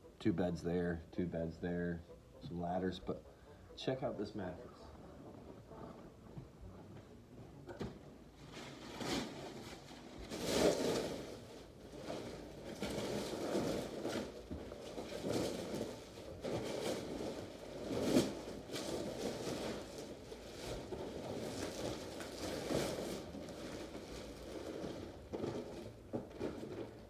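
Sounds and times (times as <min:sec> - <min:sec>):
plastic wrapping rustling: 0:07.8 - 0:27.0.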